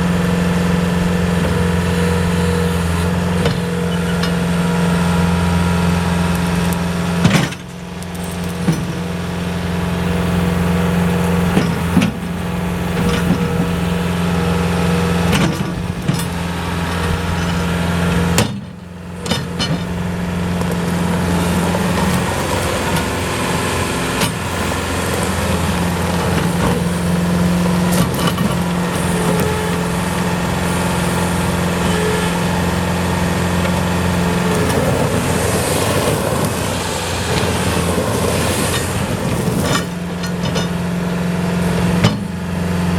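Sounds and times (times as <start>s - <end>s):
diesel engine running: 0.0s - 42.9s
sharp knocks and clanks: 11.2s - 14.2s, 15.3s - 20.8s, 42.0s - 42.4s.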